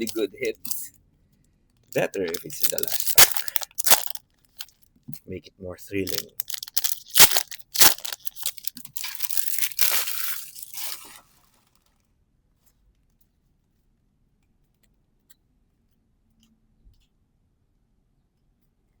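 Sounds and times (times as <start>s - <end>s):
foil pack tearing and crinkling: 2.0s - 4.7s, 6.1s - 11.6s.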